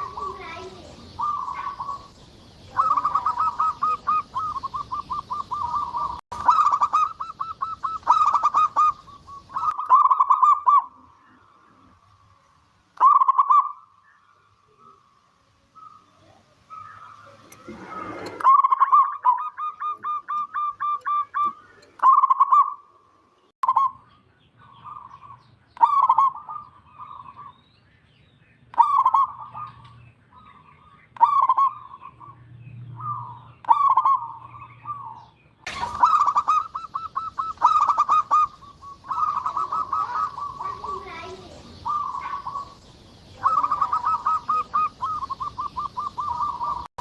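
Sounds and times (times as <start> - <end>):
dove cooing: 0.0 - 2.1, 2.7 - 11.9, 15.8 - 22.8, 33.0 - 46.9.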